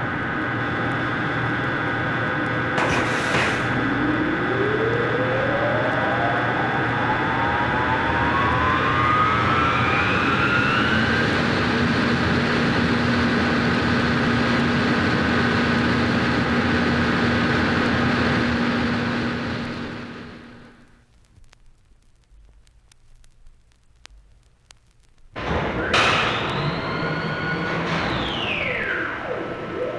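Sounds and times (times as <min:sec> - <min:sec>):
winch machinery whine: 0:00.0 - 0:20.6, 0:25.4 - 0:29.9
low hum: 0:00.0 - 0:29.9
machinery din: 0:02.7 - 0:04.8, 0:25.4 - 0:29.9.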